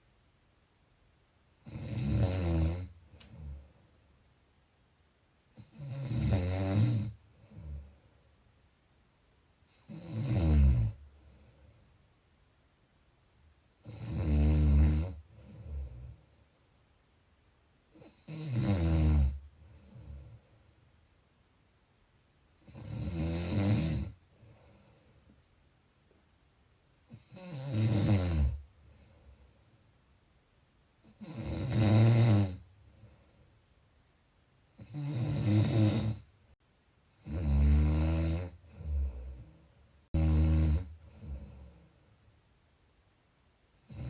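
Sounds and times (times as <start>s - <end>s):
quiet breaths: 0.0s - 21.5s, 22.4s - 42.8s
person snoring: 1.6s - 3.7s, 5.6s - 8.0s, 9.7s - 11.0s, 13.8s - 16.2s, 18.0s - 20.4s, 22.6s - 24.2s, 27.1s - 28.6s, 31.0s - 32.6s, 34.8s - 36.3s, 37.2s - 39.6s, 40.2s - 41.8s, 43.8s - 44.0s.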